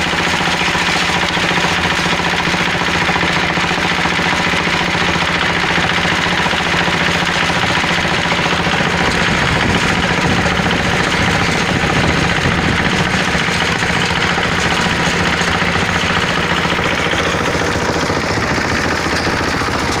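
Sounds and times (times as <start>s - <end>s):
diesel engine knocking: 0.0s - 20.0s.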